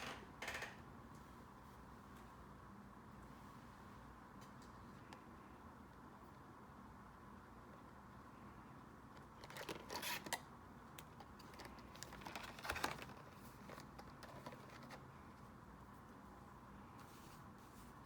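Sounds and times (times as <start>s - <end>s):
paper rustling: 11.4s - 15.4s.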